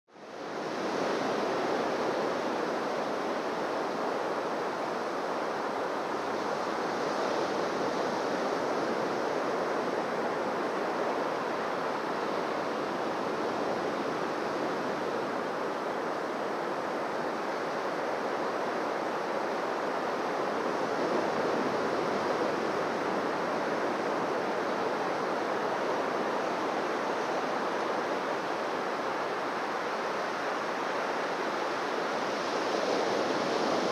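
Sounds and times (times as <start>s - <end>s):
waves washing on a beach: 0.1s - 33.9s.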